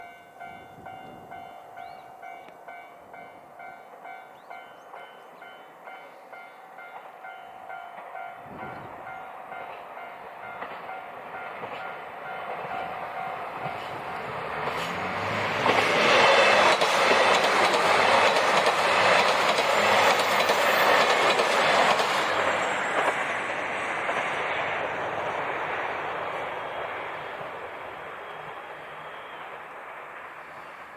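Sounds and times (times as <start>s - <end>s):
diesel train passing: 0.0s - 30.9s
train wheels clacking on rails: 6.9s - 30.9s.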